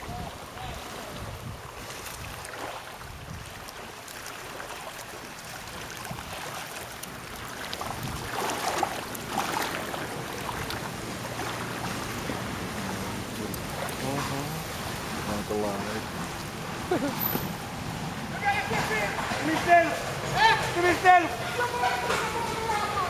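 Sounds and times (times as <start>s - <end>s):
wind on microphone: 0.0s - 4.0s, 5.5s - 6.6s, 7.7s - 15.3s
river water splashing: 0.0s - 23.0s.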